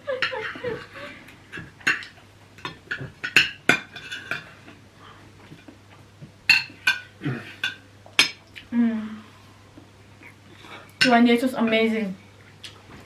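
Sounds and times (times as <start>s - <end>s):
cutlery clinking against plates: 1.5s - 4.6s, 6.5s - 8.4s.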